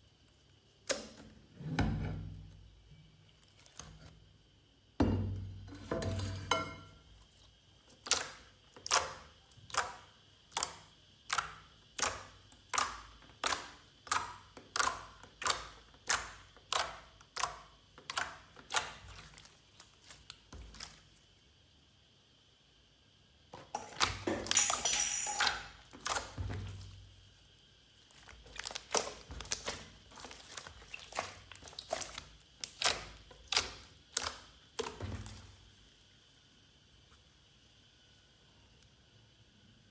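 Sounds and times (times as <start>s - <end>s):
slime sticky wet clicking pops: 9.7s - 18.9s.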